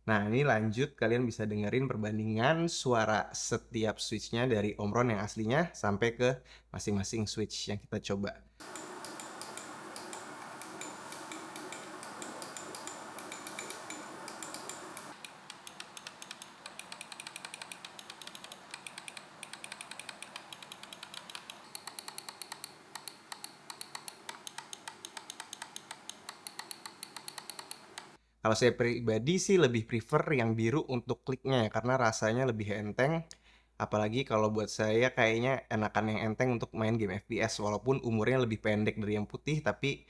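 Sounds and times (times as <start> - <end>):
mouse button switches clicking: 8.6 - 28.2.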